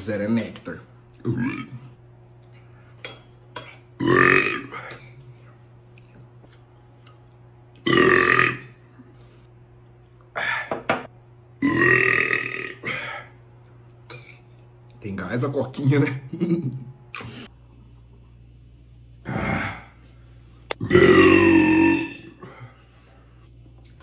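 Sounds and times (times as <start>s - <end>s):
man belching: 1.2s - 1.9s, 4.0s - 5.0s, 7.8s - 8.8s, 11.6s - 13.2s, 20.7s - 22.5s.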